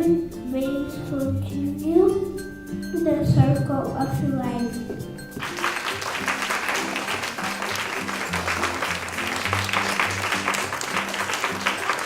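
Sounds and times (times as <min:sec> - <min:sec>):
music with sustained notes: 0:00.0 - 0:12.0
audience clapping: 0:05.4 - 0:12.0.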